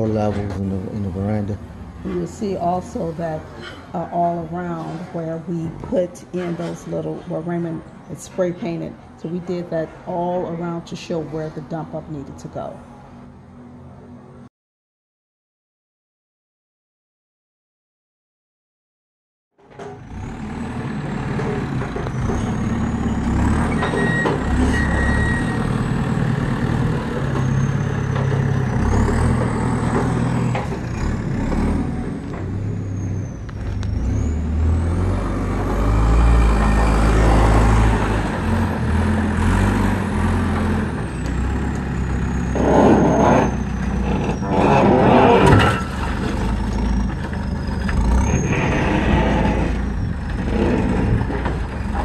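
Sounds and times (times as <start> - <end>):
diesel machinery engine running: 19.9 - 52.0
rough scraping bursts: 42.2 - 52.0.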